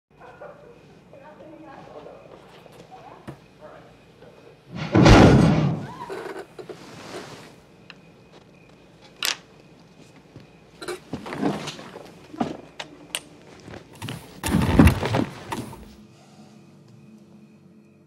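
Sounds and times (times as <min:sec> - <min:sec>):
irregular knocks and thuds: 0:04.7 - 0:05.9, 0:13.7 - 0:15.9.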